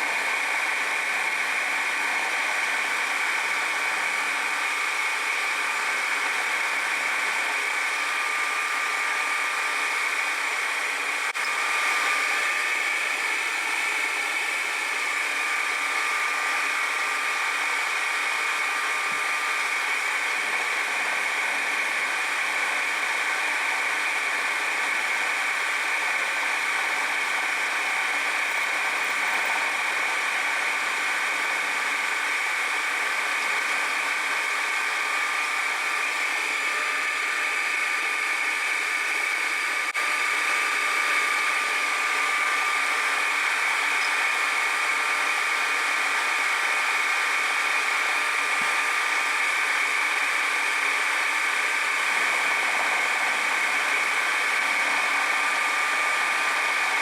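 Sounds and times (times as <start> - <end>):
machine tool cutting metal: 11.4 - 39.4.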